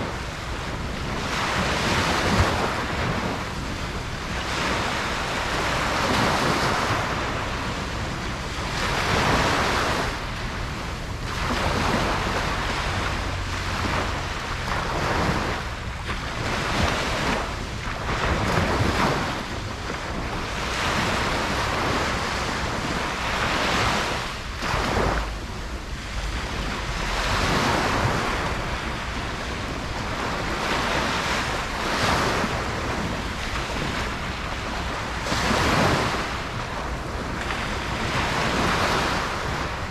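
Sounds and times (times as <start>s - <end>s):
waves breaking on beach: 0.0s - 39.9s
low rumble: 24.5s - 30.1s.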